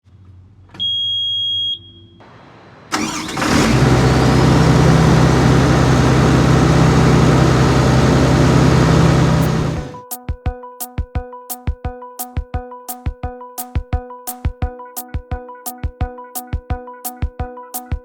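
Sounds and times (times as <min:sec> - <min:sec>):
engine starting and running: 0:02.3 - 0:10.0.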